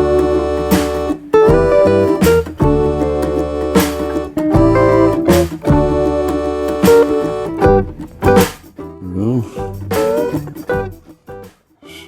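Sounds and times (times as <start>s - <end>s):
strummed acoustic guitar chords: 0.0s - 11.7s.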